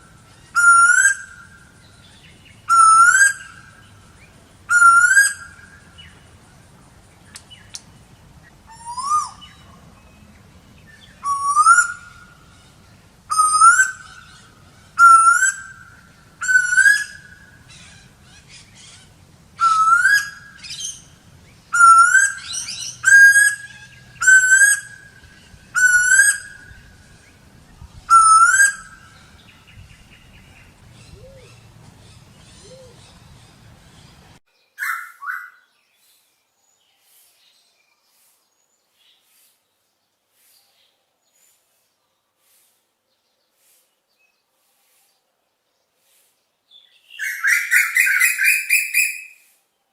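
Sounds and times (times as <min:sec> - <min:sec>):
bird whistled calls sliding upward: 0:00.4 - 0:01.3, 0:02.7 - 0:03.6, 0:04.7 - 0:05.6, 0:08.7 - 0:09.6, 0:11.0 - 0:12.2, 0:13.3 - 0:14.3, 0:15.0 - 0:15.8, 0:16.4 - 0:17.3, 0:19.6 - 0:21.0, 0:21.7 - 0:25.0, 0:25.7 - 0:26.8, 0:28.1 - 0:29.2, 0:47.2 - 0:49.6.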